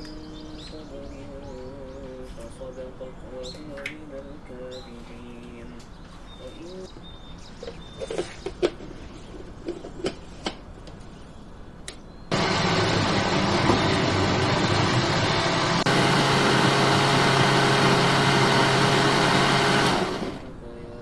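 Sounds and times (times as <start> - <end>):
machine whirring with low hum: 12.3 - 20.6.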